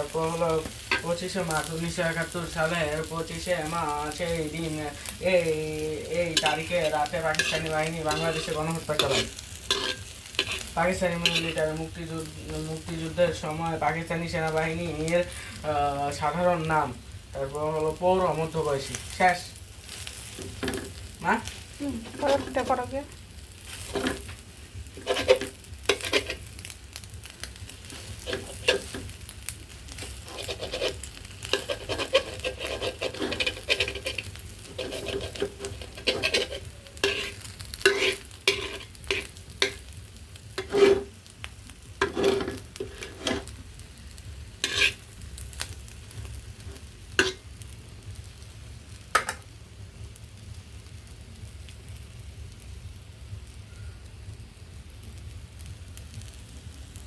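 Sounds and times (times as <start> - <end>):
egg sizzling in a pan: 0.0 - 57.0
spatula scraping a pan: 6.0 - 11.7, 22.0 - 22.8, 23.7 - 26.5, 27.7 - 29.2, 29.9 - 39.9, 40.6 - 41.1, 42.0 - 43.5, 44.6 - 45.0, 46.6 - 47.5.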